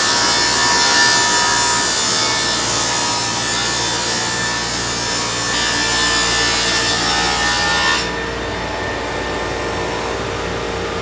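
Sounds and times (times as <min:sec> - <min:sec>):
saw blades cutting wood: 0:00.0 - 0:08.3.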